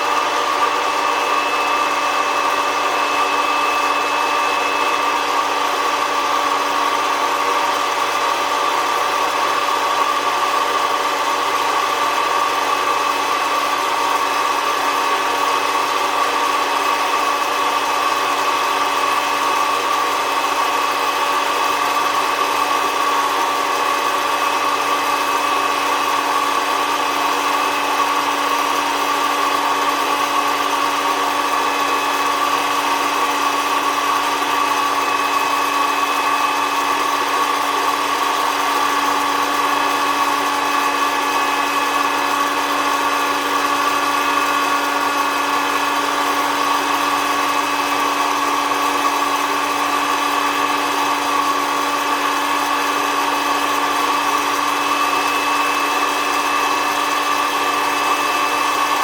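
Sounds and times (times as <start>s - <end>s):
coffee roaster fan humming: 0.0s - 59.0s.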